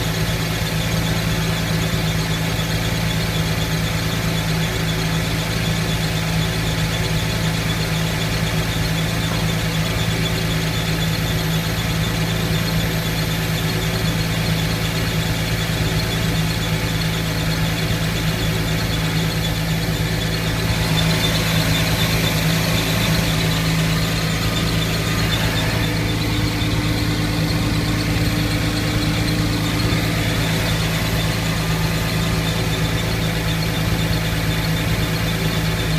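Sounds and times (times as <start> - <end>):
car engine running: 0.0 - 35.9.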